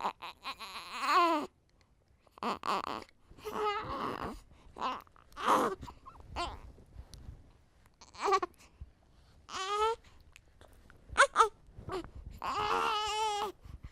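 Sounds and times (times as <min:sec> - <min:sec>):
infant whimpering and whining: 0:00.0 - 0:01.6, 0:02.3 - 0:06.8, 0:08.0 - 0:08.6, 0:09.5 - 0:10.0, 0:11.2 - 0:13.9
infant breathing: 0:02.3 - 0:06.7, 0:08.1 - 0:13.9.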